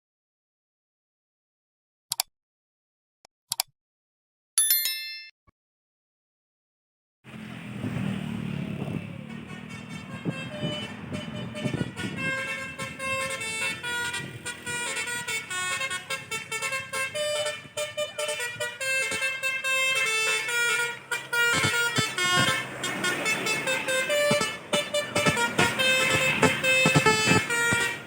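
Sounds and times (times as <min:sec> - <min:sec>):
bus engine rumble: 0:07.3 - 0:28.0
bus musical horn melody: 0:07.8 - 0:28.0.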